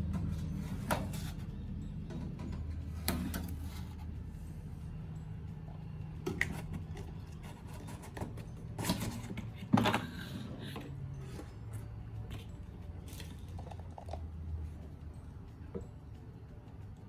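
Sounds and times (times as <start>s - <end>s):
steady low hum: 0.0s - 7.8s.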